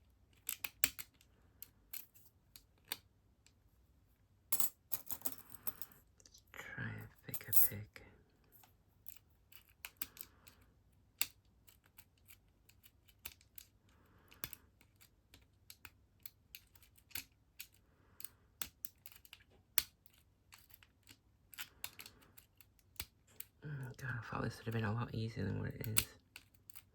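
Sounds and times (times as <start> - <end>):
lock pick clicking in a lock: 0.3 - 3.1, 9.1 - 10.6, 11.2 - 23.5, 25.8 - 26.9.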